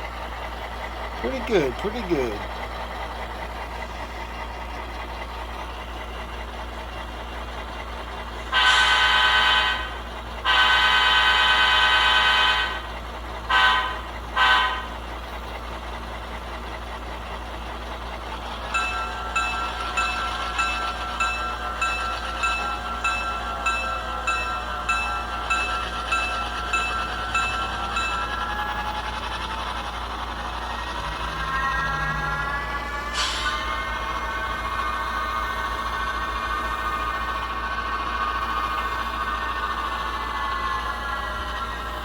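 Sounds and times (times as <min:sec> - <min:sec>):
model locomotive engine idling: 0:00.0 - 0:42.0
locomotive horn blasts: 0:08.5 - 0:12.8, 0:13.5 - 0:14.9
bell ringing: 0:18.8 - 0:28.8.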